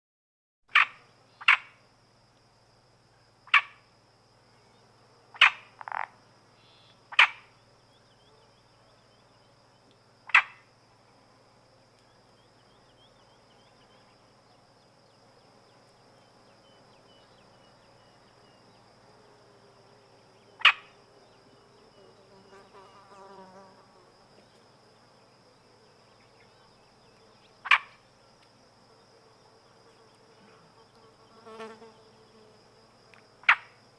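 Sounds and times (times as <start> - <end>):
frogs croaking: 0.7 - 1.9, 3.0 - 4.0, 4.8 - 33.9
faint insect buzz: 0.7 - 33.9
fly buzzing: 18.7 - 24.7, 28.9 - 33.6.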